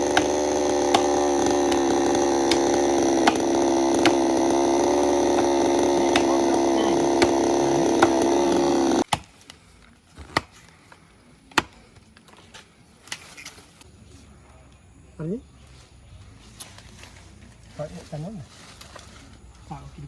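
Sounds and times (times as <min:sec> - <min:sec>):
chainsaw running: 0:00.0 - 0:09.1.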